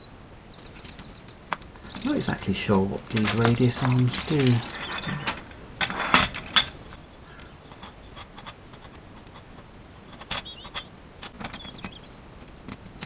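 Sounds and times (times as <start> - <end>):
plastic parts clicking and tapping: 0.6 - 13.0.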